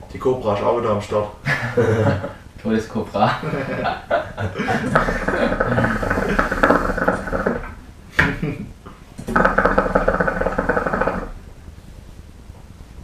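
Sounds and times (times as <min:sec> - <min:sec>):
shisha water bubbling: 0:04.6 - 0:07.8, 0:09.3 - 0:11.4.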